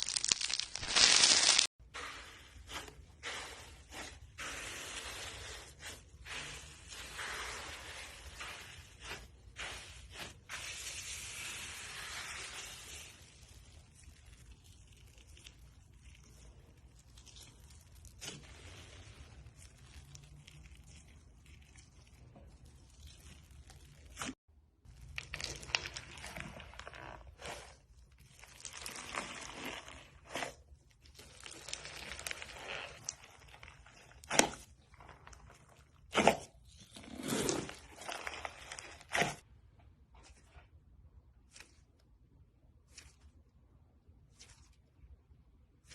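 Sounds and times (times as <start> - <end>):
material crackling and crunching: 0.0 - 1.8, 8.0 - 39.5.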